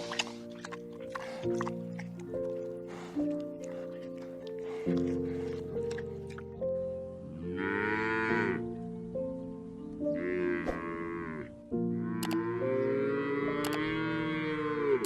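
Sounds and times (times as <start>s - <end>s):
background music: 0.0s - 15.0s
cattle mooing: 7.2s - 8.7s, 10.2s - 15.0s.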